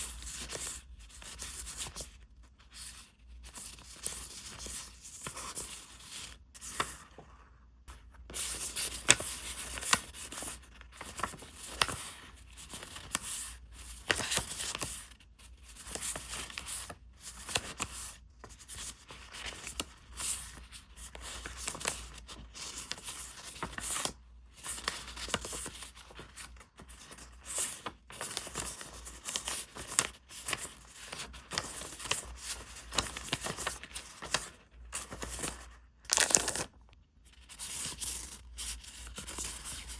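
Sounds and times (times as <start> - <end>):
packaging tearing and crinkling: 36.1 - 36.7.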